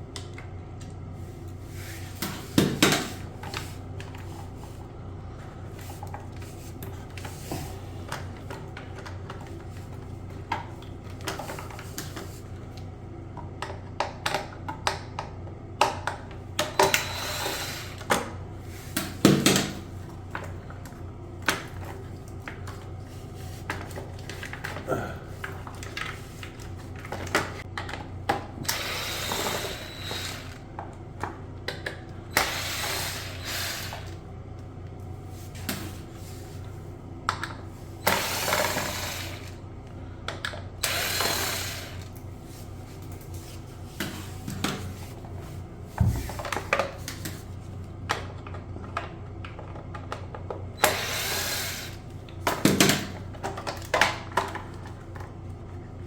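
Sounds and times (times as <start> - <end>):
cordless screwdriver running: 28.7 - 30.6, 32.4 - 34.2, 38.0 - 39.6, 40.8 - 42.1, 50.8 - 52.0.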